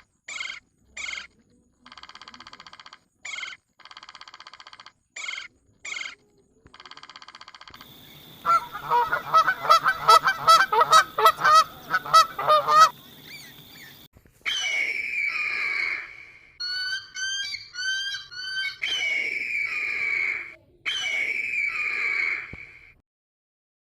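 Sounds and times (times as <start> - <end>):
fast repeated bird calls: 1.9 - 6.2, 6.8 - 22.5
long high bird calls: 7.8 - 23.0.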